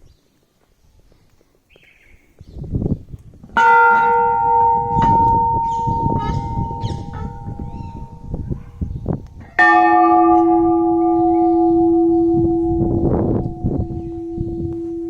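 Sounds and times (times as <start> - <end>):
low rumbling noise: 3.4 - 15.0
metal bell ringing: 3.6 - 8.5, 9.6 - 15.0.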